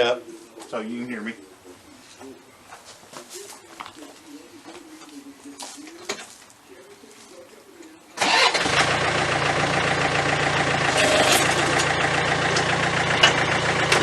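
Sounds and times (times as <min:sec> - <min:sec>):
tractor engine starting and idling: 0:08.2 - 0:14.0.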